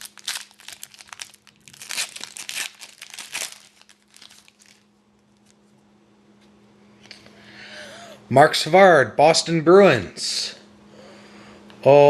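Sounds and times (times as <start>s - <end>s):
foil wrapper crinkling and tearing: 0.0s - 5.6s
faint steady hum: 0.0s - 12.0s.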